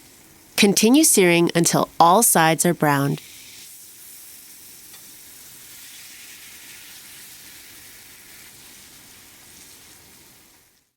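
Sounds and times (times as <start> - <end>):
meat sizzling in a pan: 0.0 - 0.6, 3.2 - 10.9.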